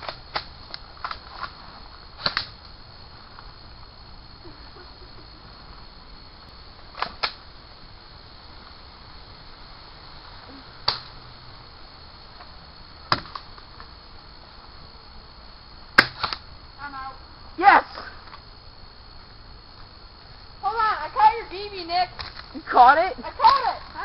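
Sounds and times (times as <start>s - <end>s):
airsoft gun shots: 16.0s - 16.4s.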